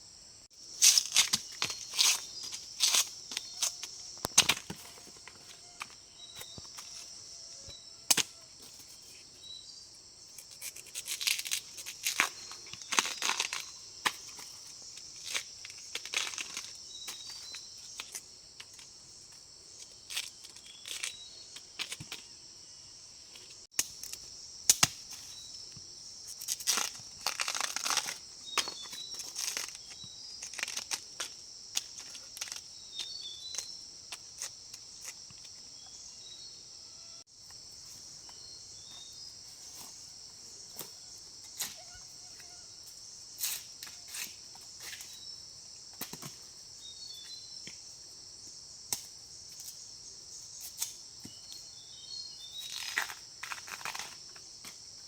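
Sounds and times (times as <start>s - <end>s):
high-pitched insect chorus: 0.0s - 55.0s
plant material crackling and tearing: 10.8s - 13.7s, 26.4s - 29.9s, 30.5s - 31.0s, 52.6s - 54.2s.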